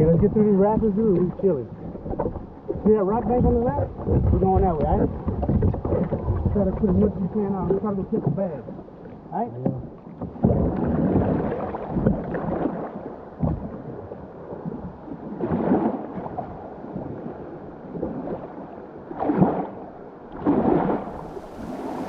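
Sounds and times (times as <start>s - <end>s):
water splashing surges: 0.0s - 22.0s
rumbling rushing river water: 19.1s - 22.0s.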